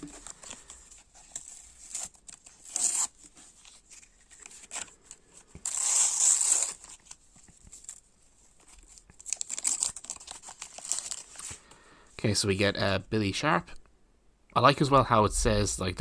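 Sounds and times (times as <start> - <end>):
wrapper rustling: 0.0 - 11.6
packet tearing open: 0.1 - 3.3, 8.9 - 11.6.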